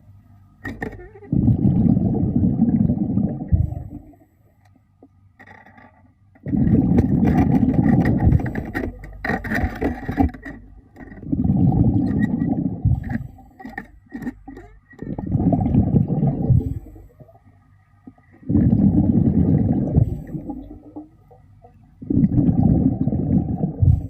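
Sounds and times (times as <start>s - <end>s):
breath bubbling underwater: 1.2s - 4.2s, 6.4s - 8.9s, 11.2s - 17.4s, 18.3s - 21.4s, 22.0s - 24.0s
clicks and scrapes: 5.4s - 11.3s, 12.0s - 15.2s.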